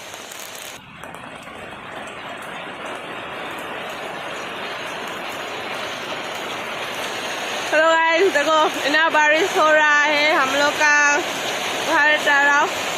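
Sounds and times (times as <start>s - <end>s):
heavy rain pouring: 0.0s - 12.9s.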